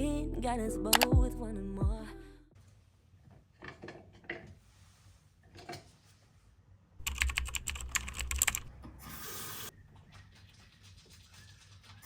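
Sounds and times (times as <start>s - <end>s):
rapid typing-like clicks: 7.0s - 8.7s.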